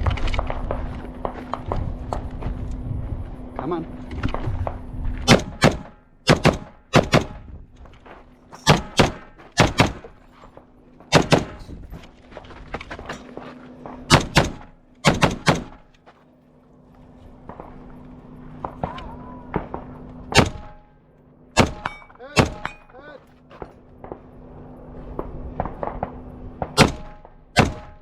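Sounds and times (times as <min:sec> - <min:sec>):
rifle shots: 0:05.2 - 0:07.5, 0:08.6 - 0:10.1, 0:11.1 - 0:11.7, 0:14.1 - 0:15.9, 0:18.6 - 0:21.0, 0:21.6 - 0:22.9, 0:25.2 - 0:28.0.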